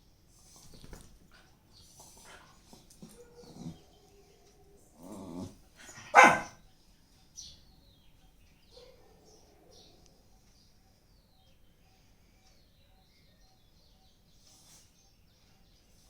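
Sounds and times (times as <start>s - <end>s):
dog barking: 3.0s - 4.1s, 5.8s - 6.6s, 8.7s - 10.2s
faint high chirps: 5.8s - 16.0s.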